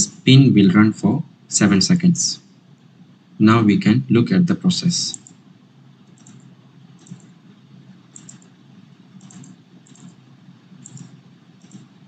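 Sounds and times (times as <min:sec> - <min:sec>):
low steady hum: 0:00.0 - 0:12.0
soft computer clicks: 0:05.1 - 0:05.4, 0:06.0 - 0:07.4, 0:08.1 - 0:08.6, 0:09.2 - 0:10.2, 0:10.8 - 0:12.0.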